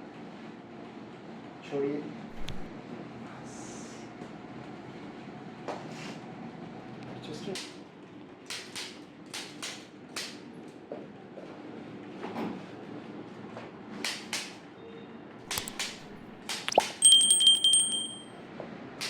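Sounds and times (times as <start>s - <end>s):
hands rustling on clothing: 2.3s - 2.7s
popping joint cracks: 2.3s - 2.8s, 15.5s - 17.0s
high ringing tone: 16.8s - 18.4s.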